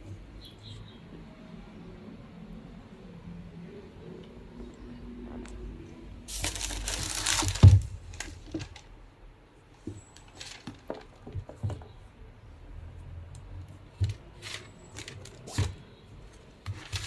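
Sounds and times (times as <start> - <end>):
packaging crinkling and tearing: 6.3 - 8.9, 10.2 - 11.1, 14.4 - 15.8, 16.7 - 17.0.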